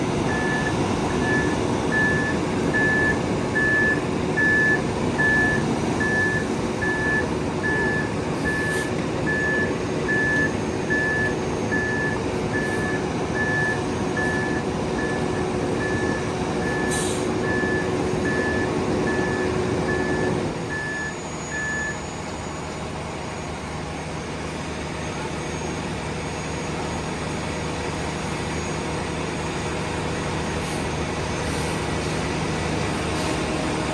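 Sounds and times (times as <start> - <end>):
diesel engine running: 0.0 - 33.9
backup alarm beeping: 0.2 - 22.0.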